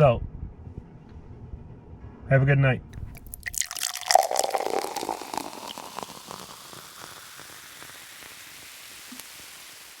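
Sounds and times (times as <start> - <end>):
steady hiss: 4.6 - 10.0.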